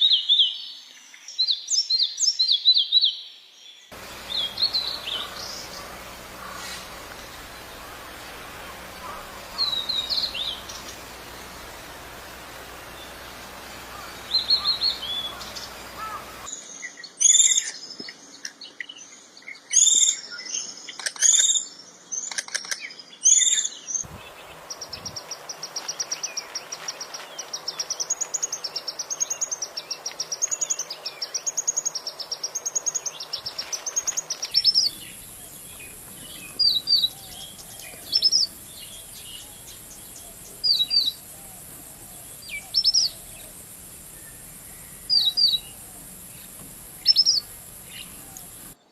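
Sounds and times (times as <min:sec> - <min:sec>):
songbirds whistling phrases: 0:34.6 - 0:48.8.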